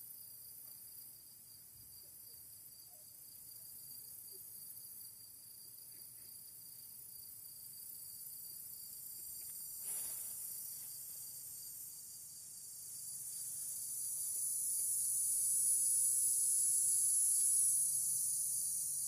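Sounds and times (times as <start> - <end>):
high-pitched insect chorus: 0.0 - 19.0
brief rustle: 9.4 - 10.4.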